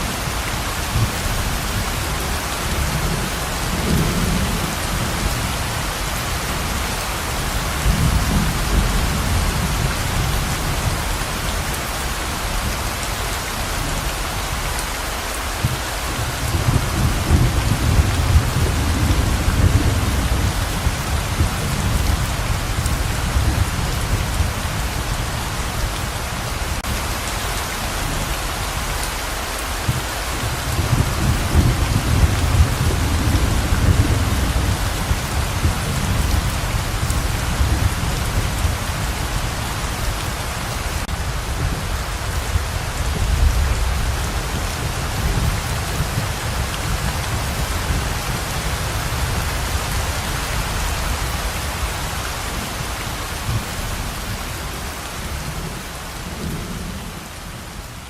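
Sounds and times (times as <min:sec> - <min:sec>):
heavy pouring rain: 0:00.0 - 0:58.0
thunder rumbling: 0:15.6 - 0:26.9, 0:29.8 - 0:58.0.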